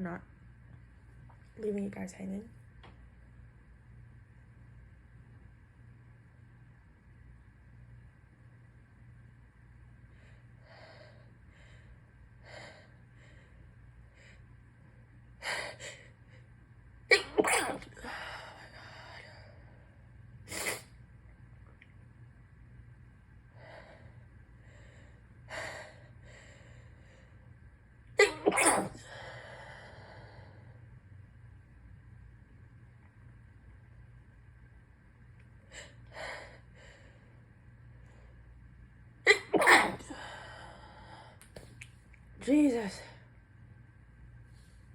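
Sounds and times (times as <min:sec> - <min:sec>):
in-breaths: 0:10.1 - 0:14.5, 0:23.5 - 0:27.5, 0:29.0 - 0:30.9, 0:35.6 - 0:38.6, 0:40.0 - 0:41.6
person sneezing: 0:17.1 - 0:18.2, 0:20.5 - 0:20.9, 0:28.2 - 0:29.0, 0:39.3 - 0:40.2.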